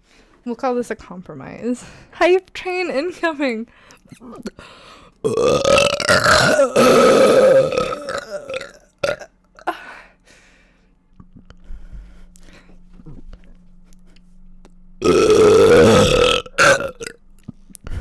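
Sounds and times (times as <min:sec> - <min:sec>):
faint steady hum: 0:00.0 - 0:18.0
woman burping: 0:05.2 - 0:09.9, 0:15.0 - 0:17.2.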